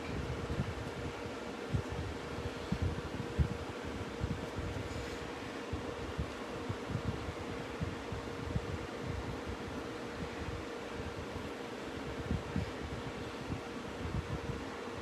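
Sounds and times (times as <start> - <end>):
fan-like hum: 0.0 - 15.0.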